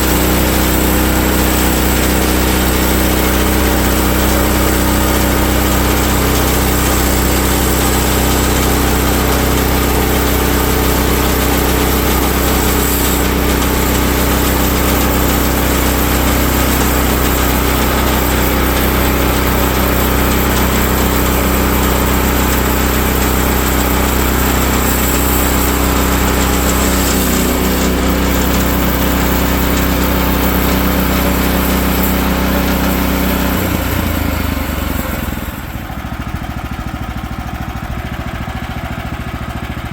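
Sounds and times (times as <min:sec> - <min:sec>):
band sawmill engine cutting log: 0:00.0 - 0:39.9.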